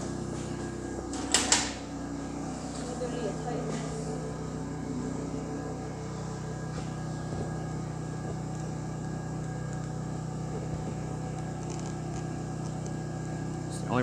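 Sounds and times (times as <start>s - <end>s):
electrical machine hum: 0.0s - 14.0s.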